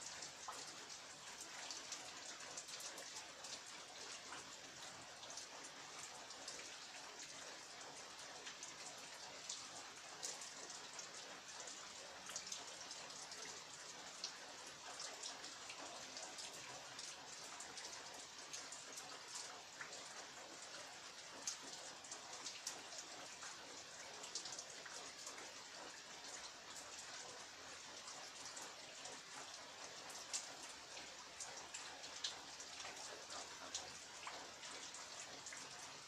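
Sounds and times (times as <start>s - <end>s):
raindrops pattering on surfaces: 0.0s - 36.0s.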